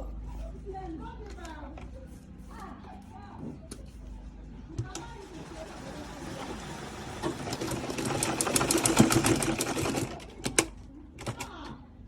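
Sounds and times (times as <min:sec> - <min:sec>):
sewing machine stitching: 0:05.0 - 0:11.4.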